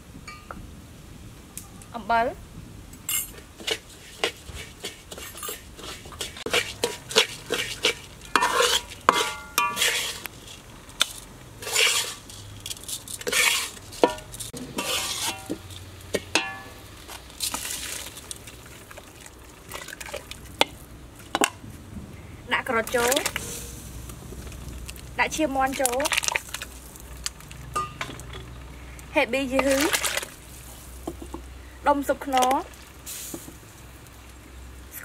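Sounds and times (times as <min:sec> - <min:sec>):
metal spoon scraping a pot: 0:03.1 - 0:15.8.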